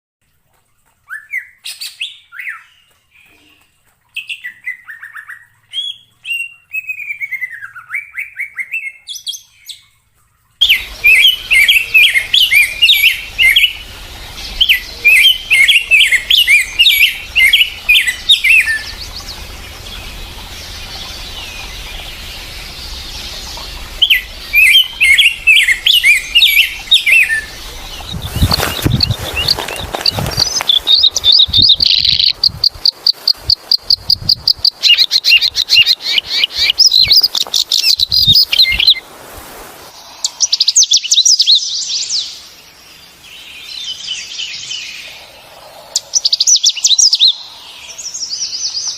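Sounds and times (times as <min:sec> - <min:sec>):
steady background hiss: 0:10.1 - 0:48.9
birds chirping and whistling: 0:10.6 - 0:39.0, 0:43.4 - 0:48.9
rapid loud bird chattering: 0:10.6 - 0:39.0, 0:44.6 - 0:48.9.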